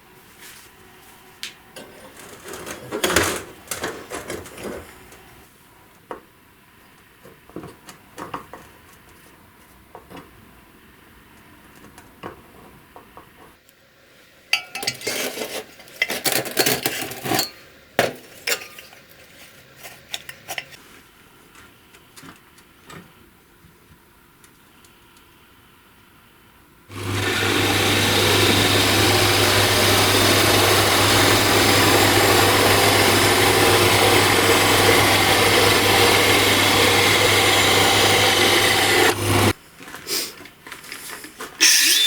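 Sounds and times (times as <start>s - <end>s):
loud clattering and scraping: 1.8s - 5.4s.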